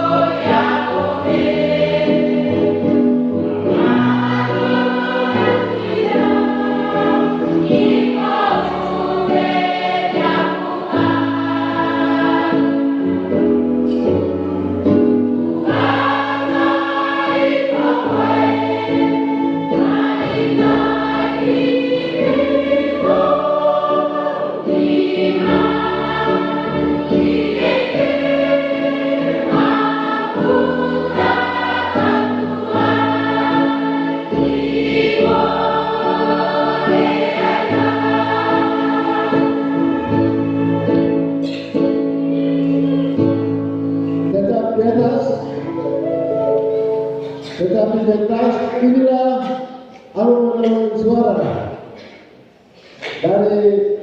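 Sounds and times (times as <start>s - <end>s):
choir singing a hymn: 0.0s - 52.5s.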